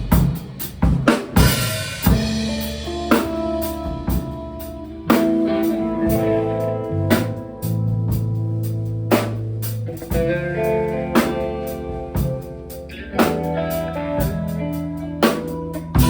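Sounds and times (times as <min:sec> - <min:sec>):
drum kit hits: 0:00.0 - 0:12.6
guitar and bass chords: 0:01.4 - 0:16.0.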